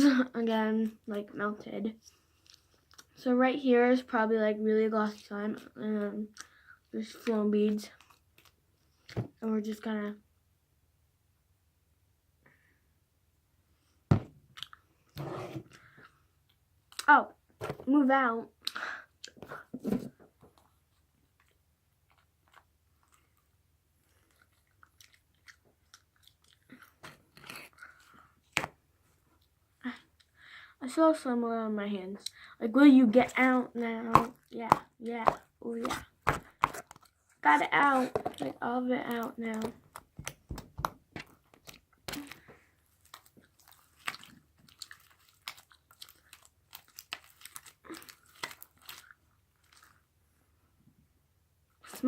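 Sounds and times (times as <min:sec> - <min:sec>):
slime squishing by hand: 0:33.1 - 0:50.1.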